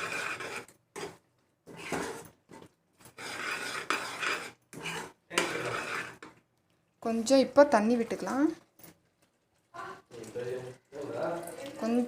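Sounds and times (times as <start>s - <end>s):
spoon scraping a pan: 0.0s - 6.4s.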